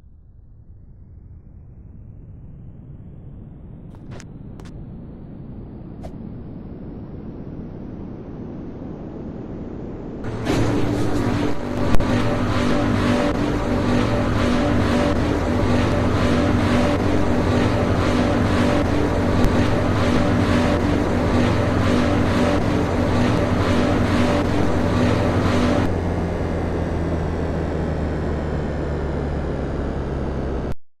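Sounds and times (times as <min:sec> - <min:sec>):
steady tone: 0:06.3 - 0:30.7
pulsing whoosh: 0:10.2 - 0:30.7.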